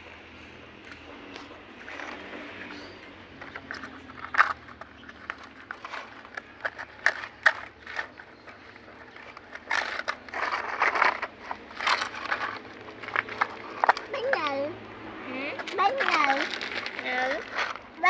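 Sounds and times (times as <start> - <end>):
toy cars clicking and knocking: 0.8 - 14.8, 15.5 - 18.0
toy cars scraping: 0.8 - 18.0.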